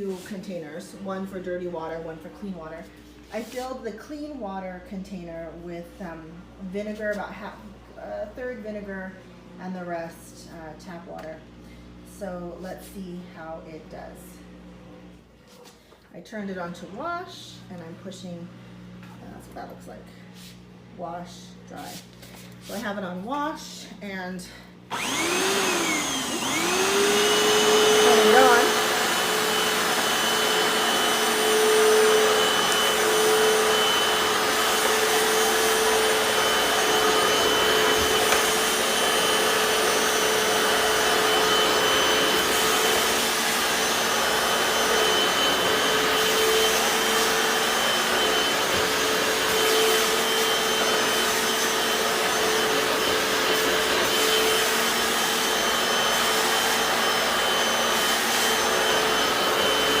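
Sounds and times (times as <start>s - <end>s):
scrub brushes on wet tile: 2.8s - 4.1s, 21.8s - 22.9s
suction motor whining: 24.9s - 60.0s.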